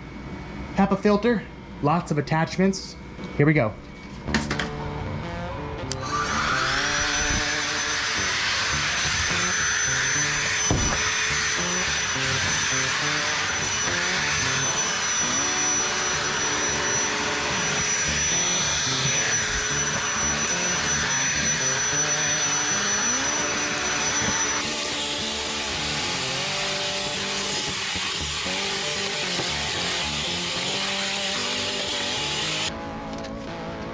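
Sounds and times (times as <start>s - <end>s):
background music: 4.3s - 6.3s, 32.0s - 33.9s
handheld vacuum whining: 5.9s - 32.7s.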